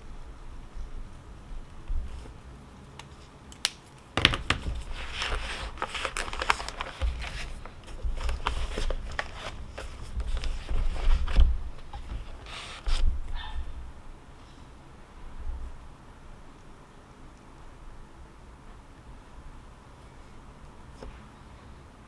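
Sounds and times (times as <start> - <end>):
handling rustling and crinkling: 3.0 - 13.8.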